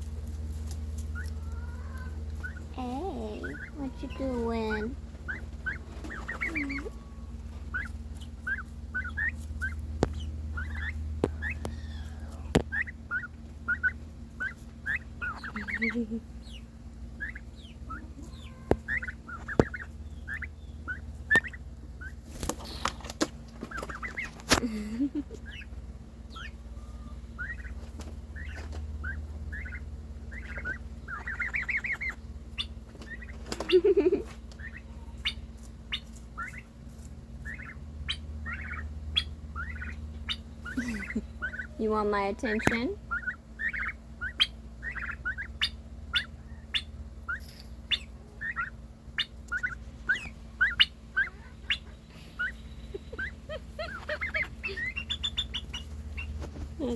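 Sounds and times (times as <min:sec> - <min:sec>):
steady low hum: 0:00.0 - 0:56.9
turkeys yelping: 0:00.0 - 0:56.9
lower coarse turkey call: 0:05.2 - 0:22.2, 0:26.3 - 0:33.4, 0:37.4 - 0:41.8, 0:43.1 - 0:56.4.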